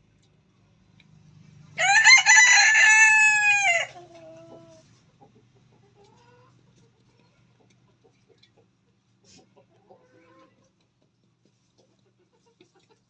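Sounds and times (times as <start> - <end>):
rooster crowing: 1.8 - 4.0
faint clucks: 4.0 - 13.0.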